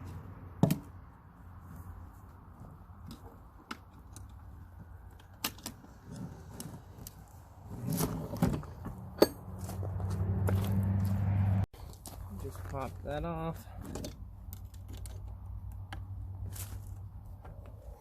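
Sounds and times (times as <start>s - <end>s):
hand tools clicking and scraping metal: 2.2s - 9.9s, 13.6s - 18.0s.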